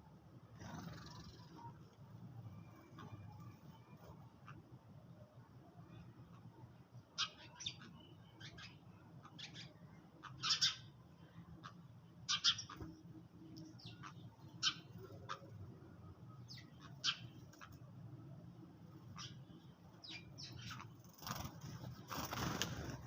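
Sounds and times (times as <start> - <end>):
sparrows chirping: 0.6 - 1.9, 5.9 - 18.0, 18.8 - 23.0.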